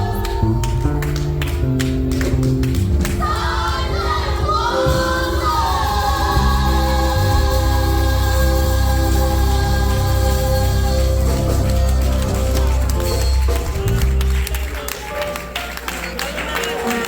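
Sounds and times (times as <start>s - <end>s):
gospel singing voices: 0.0s - 1.4s, 3.1s - 13.6s
percussion hits: 0.0s - 15.7s.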